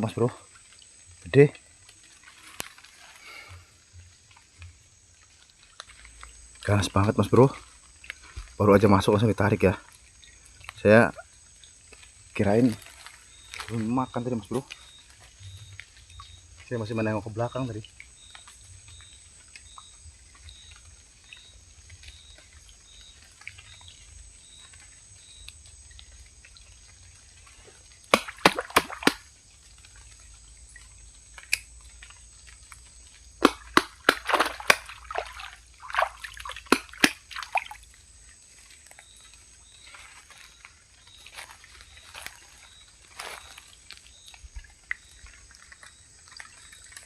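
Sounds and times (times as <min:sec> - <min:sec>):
water splashing: 0:26.0 - 0:47.0.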